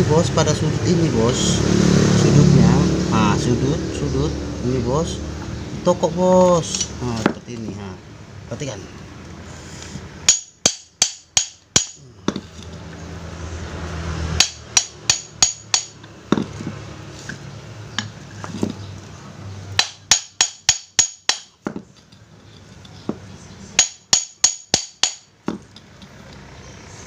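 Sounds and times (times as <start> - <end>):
hammer tapping on metal: 10.3 - 12.4, 14.4 - 16.5, 19.8 - 21.9, 23.8 - 25.7.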